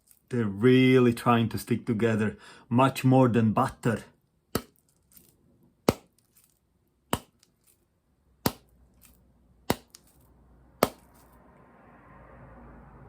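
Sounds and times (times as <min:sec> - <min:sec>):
butter blocks slapping together: 0:04.5 - 0:04.8, 0:05.9 - 0:06.2, 0:07.1 - 0:07.6, 0:08.4 - 0:10.1, 0:10.8 - 0:11.2.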